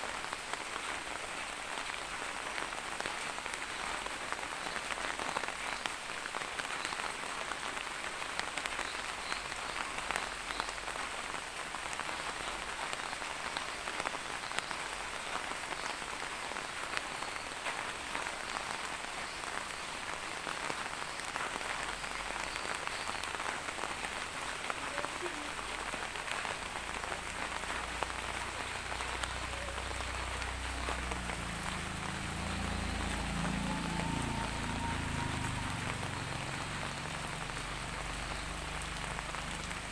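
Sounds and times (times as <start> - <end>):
steady rain falling: 0.0 - 39.9
low rumble: 28.2 - 39.8.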